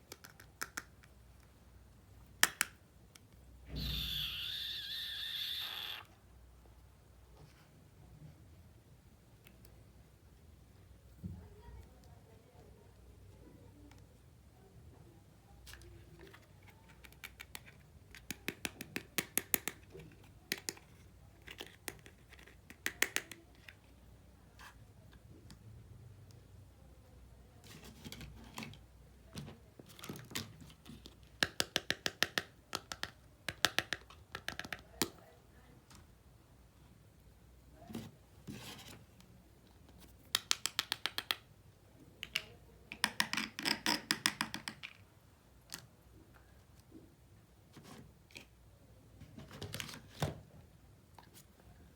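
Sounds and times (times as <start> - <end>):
toy pieces clicking and tapping: 0.1 - 1.2, 17.0 - 20.8, 21.4 - 23.7, 31.4 - 35.2, 40.3 - 41.5, 42.2 - 45.0
plastic toy knock: 40.4 - 41.4, 42.2 - 45.0.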